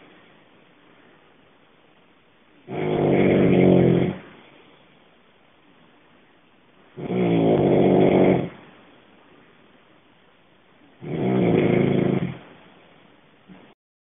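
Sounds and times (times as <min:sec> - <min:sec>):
person snoring loudly: 0:02.7 - 0:04.3, 0:07.0 - 0:08.6, 0:11.0 - 0:12.4.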